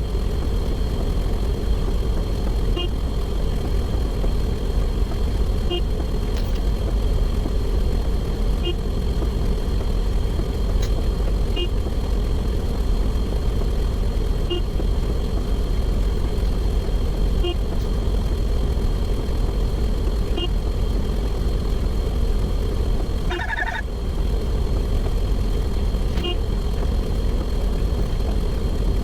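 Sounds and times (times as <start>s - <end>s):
burst of higher tones: 23.3s - 23.8s.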